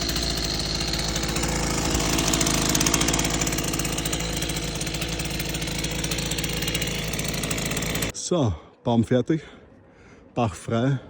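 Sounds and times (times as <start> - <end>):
heavy machine engine running: 0.0 - 8.1.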